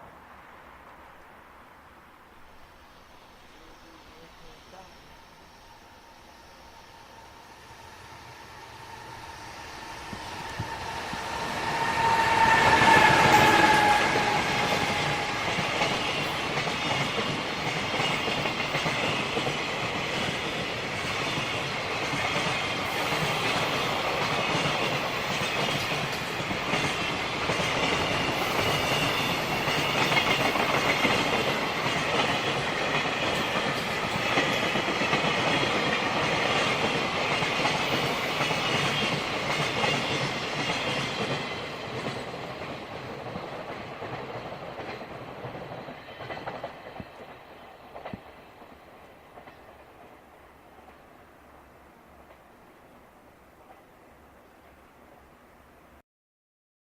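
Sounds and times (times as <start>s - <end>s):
freight train passing: 0.0s - 55.9s
wheels clacking over rail joints: 9.8s - 48.8s.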